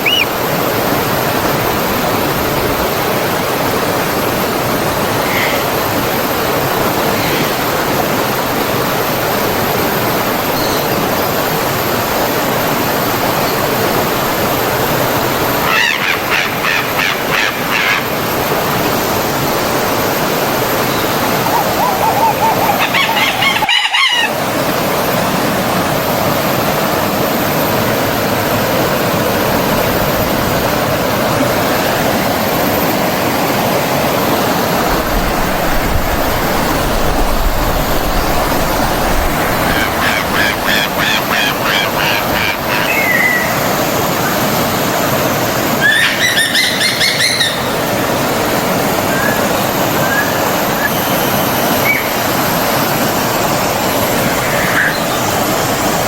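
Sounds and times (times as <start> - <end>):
bird calling: 0.0 - 0.4, 5.0 - 8.1, 15.6 - 18.2, 20.7 - 24.4, 34.9 - 44.4, 45.7 - 48.0, 49.0 - 52.4, 54.1 - 55.6
stream water flowing and splashing: 0.0 - 56.0.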